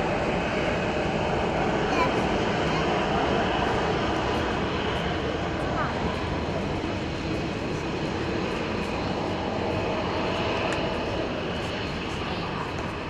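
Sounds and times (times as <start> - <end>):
jet engine rumble: 0.0 - 13.0.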